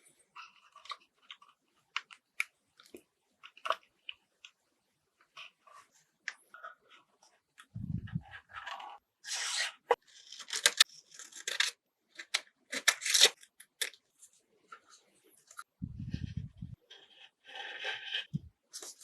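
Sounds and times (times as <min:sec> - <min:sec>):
tearing and rubbing noise: 0:15.8 - 0:19.0.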